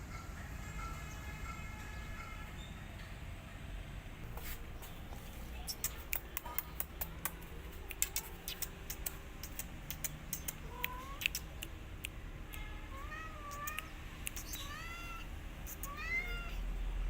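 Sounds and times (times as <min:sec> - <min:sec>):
low steady hum: 0:00.0 - 0:17.0
kitten mewing: 0:05.6 - 0:16.6
quick small clicks and ticks: 0:05.7 - 0:12.7, 0:13.5 - 0:14.8.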